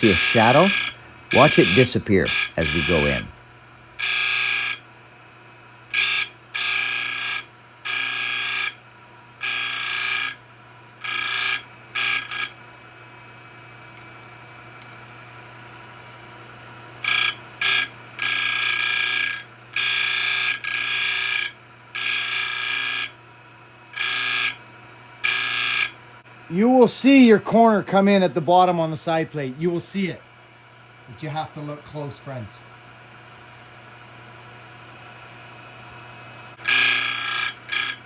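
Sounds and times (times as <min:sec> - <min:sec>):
grinding wheel screeching on metal: 0:00.0 - 0:03.3, 0:04.0 - 0:04.8, 0:05.9 - 0:08.8, 0:09.4 - 0:10.4, 0:11.0 - 0:12.6, 0:17.0 - 0:23.2, 0:23.9 - 0:24.6, 0:25.2 - 0:26.0, 0:36.6 - 0:38.0
steady low hum: 0:00.0 - 0:06.6.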